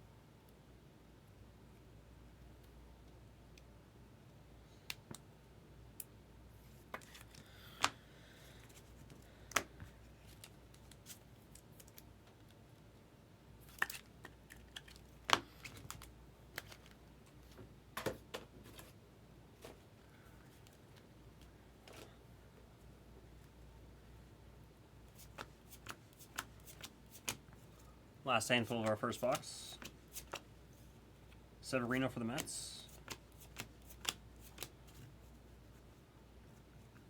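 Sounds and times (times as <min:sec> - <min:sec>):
cards and packaging clicking: 0:13.7 - 0:17.0, 0:25.2 - 0:27.4, 0:28.7 - 0:30.5, 0:32.0 - 0:35.0.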